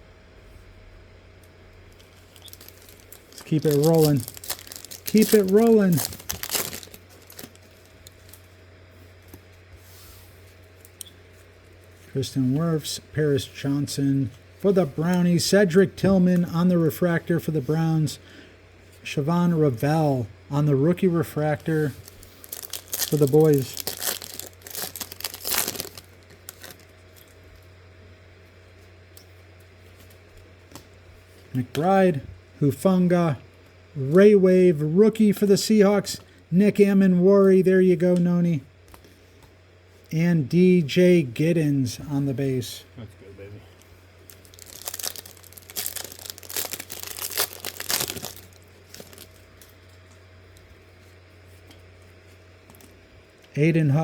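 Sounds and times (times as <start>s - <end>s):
faint low hum: 0.0s - 54.0s
foil wrapper tearing and crinkling: 1.9s - 8.5s, 21.5s - 27.4s, 44.2s - 50.2s.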